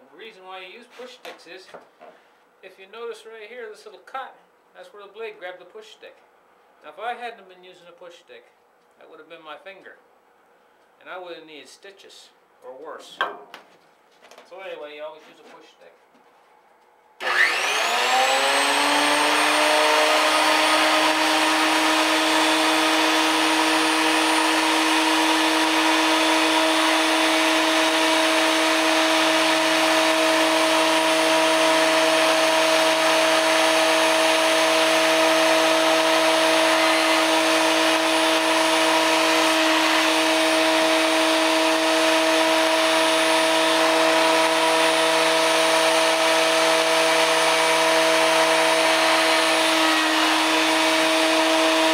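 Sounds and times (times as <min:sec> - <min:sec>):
thickness planer whine: 0:17.2 - 0:51.9.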